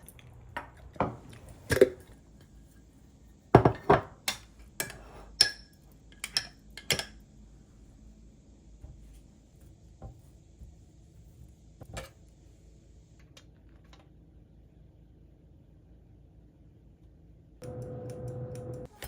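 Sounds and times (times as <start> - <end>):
dishes and cutlery clinking: 3.6 - 7.2.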